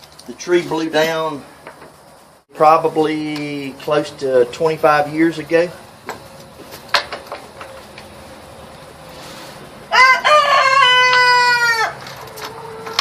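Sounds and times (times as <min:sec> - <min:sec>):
rooster crowing: 0:09.8 - 0:13.0.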